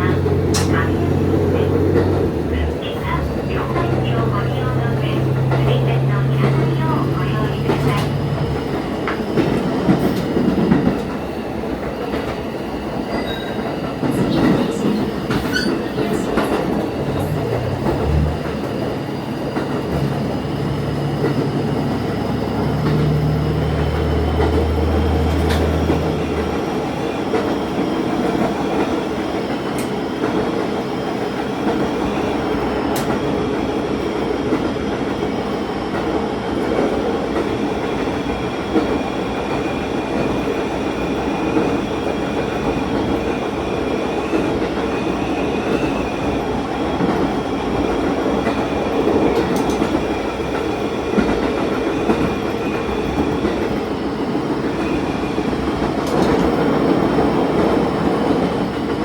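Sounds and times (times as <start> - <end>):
diesel engine drone: 0.0 - 9.0, 16.9 - 27.0
wheel on rail noise: 0.0 - 59.0.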